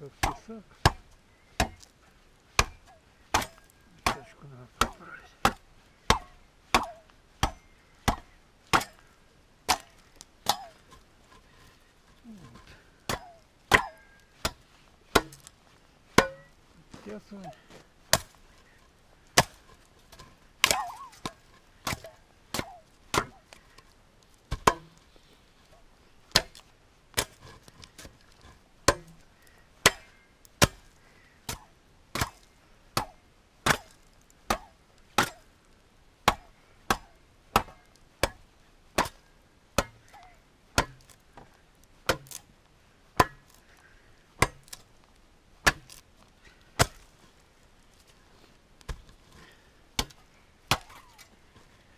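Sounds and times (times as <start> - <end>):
sharp chopping strikes on wood: 0.1 - 1.9, 2.6 - 9.0, 9.7 - 10.8, 13.1 - 15.5, 16.2 - 17.2, 18.1 - 18.4, 19.4 - 23.4, 24.5 - 25.0, 26.3 - 26.6, 27.2 - 27.4, 28.9 - 29.2, 29.8 - 30.9, 31.5 - 35.5, 36.2 - 38.4, 39.0 - 39.2, 39.8 - 41.2, 42.1 - 42.5, 43.2 - 43.6, 44.4 - 44.8, 45.6 - 46.0, 46.8 - 47.0, 50.0 - 51.2.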